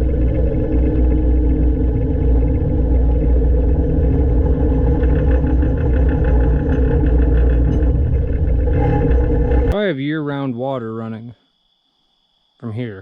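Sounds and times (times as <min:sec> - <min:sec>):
excavator diesel engine running: 0:00.0 - 0:09.8.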